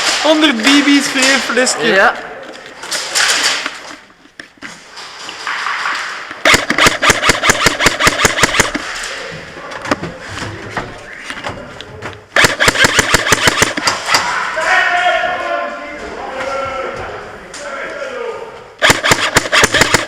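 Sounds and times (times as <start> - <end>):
airsoft rifle firing: 6.4 - 8.9, 12.4 - 14.2, 18.8 - 20.0.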